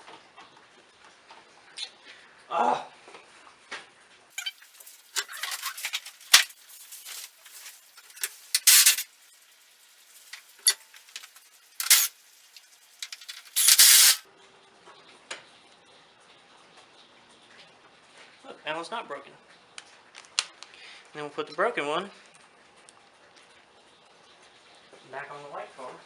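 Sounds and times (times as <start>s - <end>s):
small metal and plastic parts rattling: 4.4s - 9.2s, 10.1s - 12.2s, 13.0s - 14.2s.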